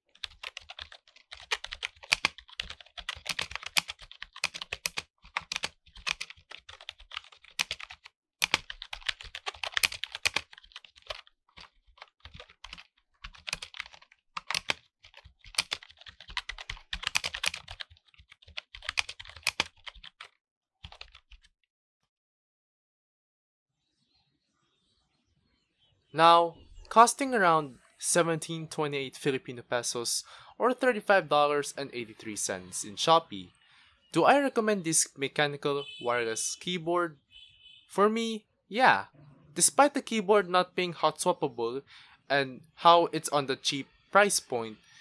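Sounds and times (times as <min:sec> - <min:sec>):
mechanical keyboard typing: 0:00.1 - 0:21.5.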